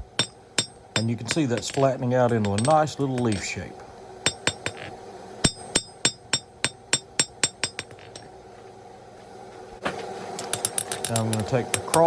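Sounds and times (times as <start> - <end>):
hammer ringing on anvil: 0.2 - 3.6, 5.4 - 8.0, 10.4 - 12.0.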